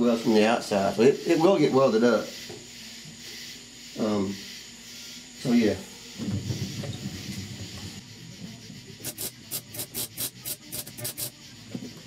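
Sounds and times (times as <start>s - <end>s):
welder crackling bursts: 9.0s - 11.4s.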